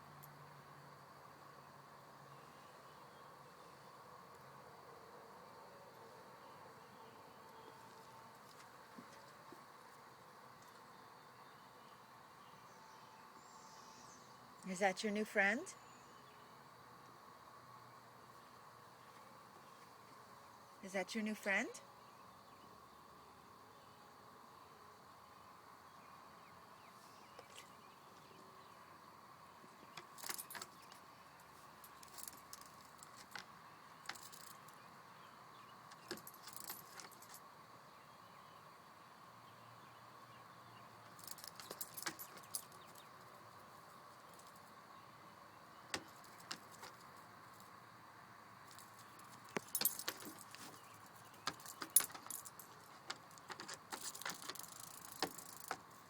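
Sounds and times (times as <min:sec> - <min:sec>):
sharp rattling bursts: 0:48.7 - 0:55.9.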